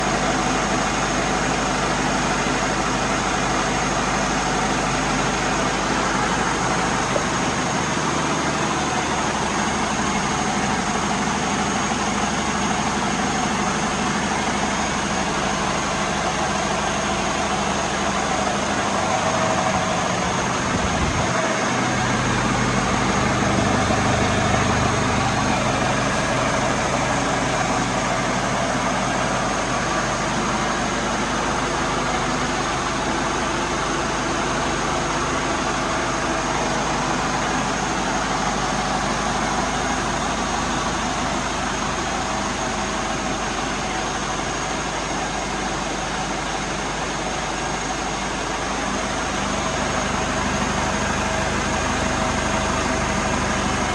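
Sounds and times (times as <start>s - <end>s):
vehicle engine idling: 0.0s - 53.9s
steady high tone: 16.2s - 27.8s.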